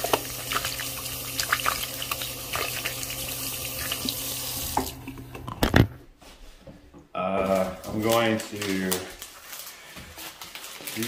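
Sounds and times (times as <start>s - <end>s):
hands washing with splashes: 0.0s - 5.2s
water running from a tap: 0.0s - 5.2s.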